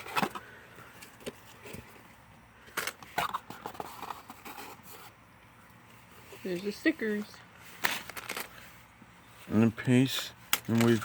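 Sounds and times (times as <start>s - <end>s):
plastic bags crinkling: 7.7s - 8.7s.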